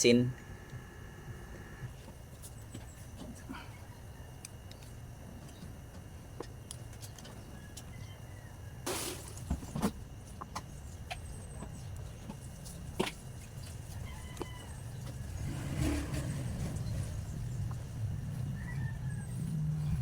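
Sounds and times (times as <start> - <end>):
low background rumble: 7.4 - 20.0.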